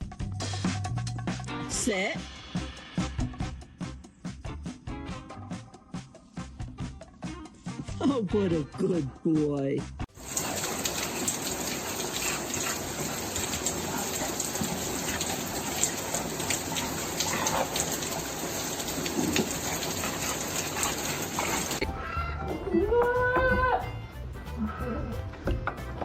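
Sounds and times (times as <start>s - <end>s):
running water rushing: 10.1s - 21.8s.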